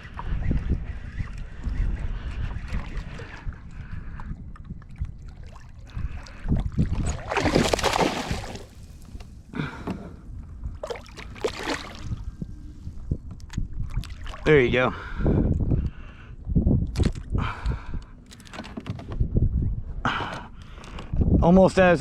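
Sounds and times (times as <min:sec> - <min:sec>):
water splashing: 0:06.8 - 0:09.1, 0:10.8 - 0:12.2.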